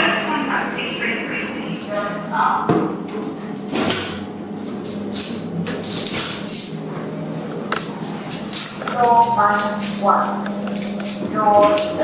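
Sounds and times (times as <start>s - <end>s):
lift motor humming: 0.0s - 12.0s.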